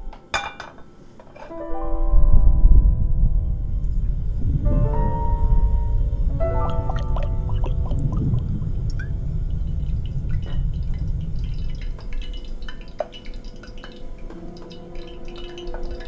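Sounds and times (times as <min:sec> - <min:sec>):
low rumble: 0:02.1 - 0:12.1
water drops plinking: 0:06.3 - 0:16.0.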